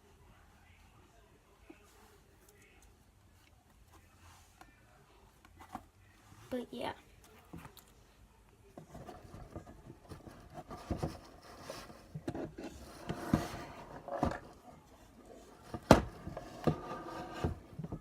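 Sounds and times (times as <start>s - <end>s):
rubbing and scraping: 8.8s - 18.0s.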